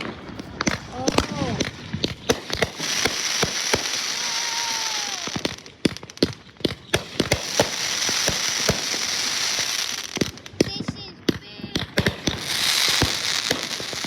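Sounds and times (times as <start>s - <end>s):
fireworks bangs and crackles: 0.0s - 14.0s
fireworks hissing spray: 2.8s - 5.7s.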